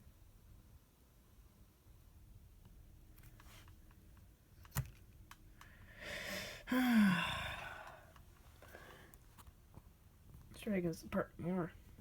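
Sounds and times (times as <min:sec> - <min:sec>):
person breathing: 0:05.6 - 0:09.2
person groaning: 0:06.7 - 0:07.8.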